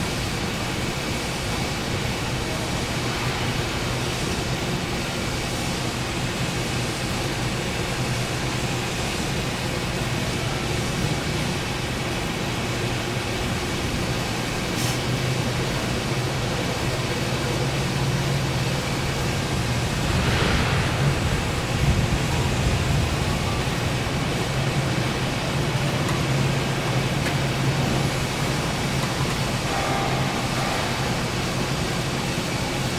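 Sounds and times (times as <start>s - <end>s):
factory machinery hum: 0.0s - 32.9s
brief high hiss: 14.8s - 15.0s
loud rushing swell: 19.8s - 23.9s.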